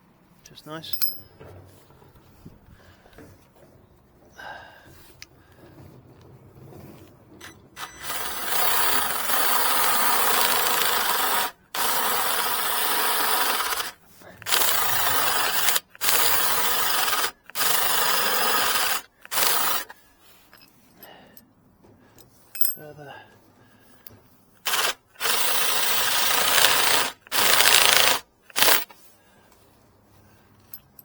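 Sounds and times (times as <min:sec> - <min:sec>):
power tool cutting wood: 0:07.8 - 0:19.9, 0:24.7 - 0:28.9.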